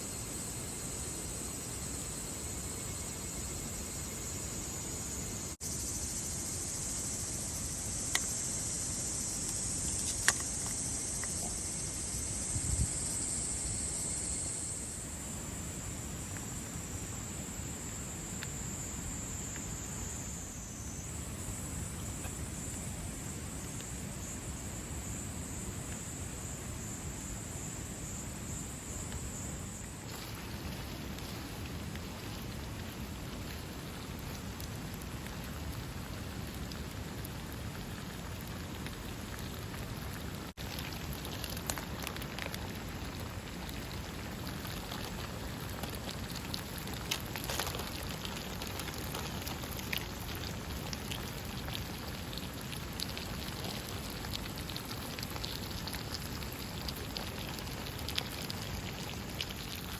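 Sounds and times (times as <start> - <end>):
water noise: 0.0 - 16.7, 28.6 - 59.9
high insect trill: 0.0 - 59.9
small ticks: 7.4 - 13.4, 22.2 - 22.8, 29.0 - 59.9.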